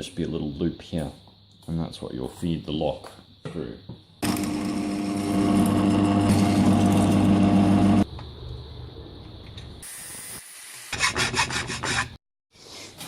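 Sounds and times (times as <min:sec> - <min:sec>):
small electric motor running: 0:04.2 - 0:08.0.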